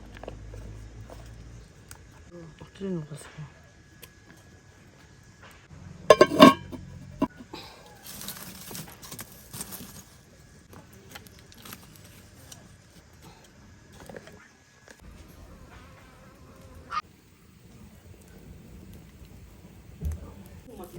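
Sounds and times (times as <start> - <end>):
hard objects clattering: 6.1 - 7.3.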